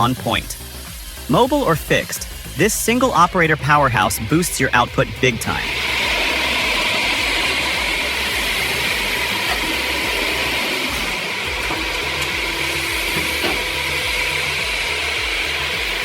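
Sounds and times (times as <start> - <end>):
firewood processing machine running: 0.0 - 16.0.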